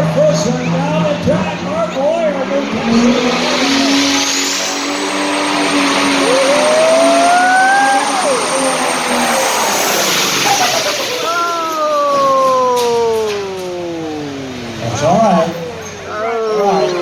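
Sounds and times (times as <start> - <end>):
turbo whine: 0.0 - 11.0
tractor diesel engine at full throttle: 0.0 - 11.4.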